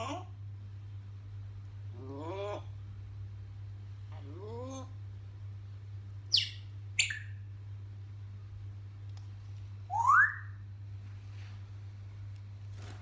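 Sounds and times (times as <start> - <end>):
steady low hum: 0.0 - 13.0
parrot rising whistle: 9.9 - 10.6.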